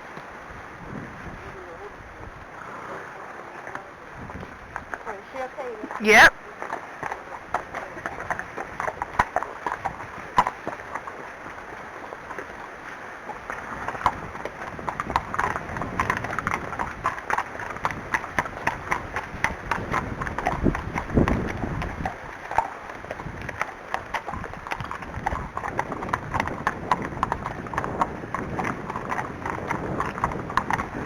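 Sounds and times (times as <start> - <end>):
horse hooves walking: 0.0 - 31.0.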